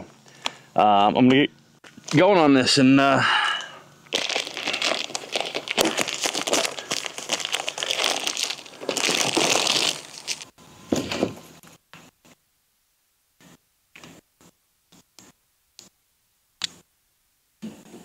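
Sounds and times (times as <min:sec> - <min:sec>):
wire mesh crackling and rattling: 0:04.1 - 0:10.5.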